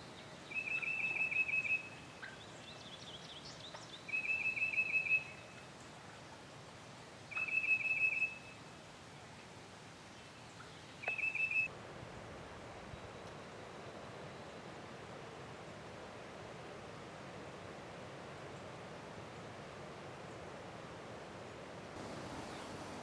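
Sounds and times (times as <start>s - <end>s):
faint bird chirping: 0.0s - 6.0s, 7.3s - 8.7s, 10.1s - 11.7s
songbird trilling: 0.4s - 5.6s, 7.3s - 8.6s, 10.6s - 11.7s.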